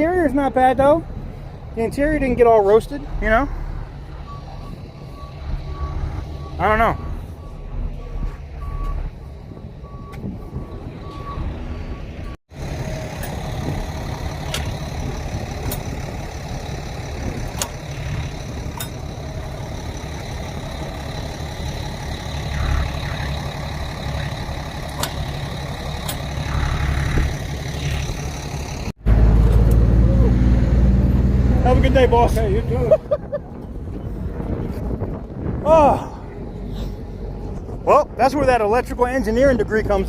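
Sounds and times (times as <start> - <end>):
heavy truck engines running: 0.0 - 40.0
reversing alarm beeping: 4.2 - 12.4, 20.1 - 28.6.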